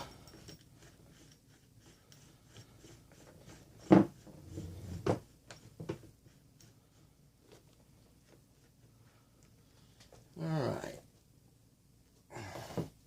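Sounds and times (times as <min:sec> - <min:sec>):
light rubbing: 0:00.0 - 0:09.3.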